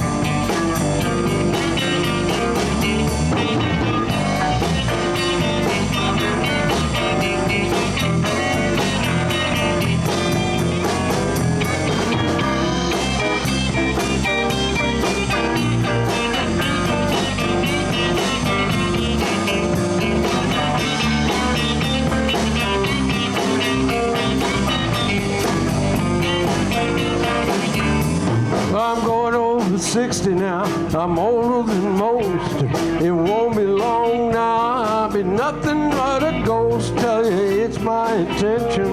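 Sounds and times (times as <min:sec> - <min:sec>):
electric guitar soloing: 0:00.0 - 0:29.6
bass: 0:00.0 - 0:38.9
drum kit beat: 0:00.0 - 0:38.9.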